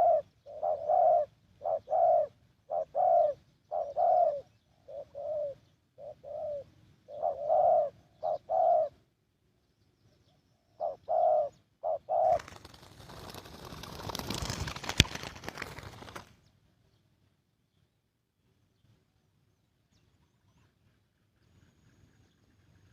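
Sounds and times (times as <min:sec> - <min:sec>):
dove cooing: 0:00.0 - 0:09.1, 0:10.7 - 0:16.1.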